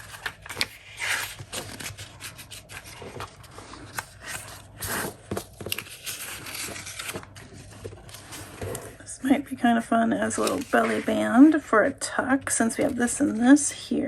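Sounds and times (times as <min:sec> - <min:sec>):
paper sheets sliding: 0:10.3 - 0:11.6.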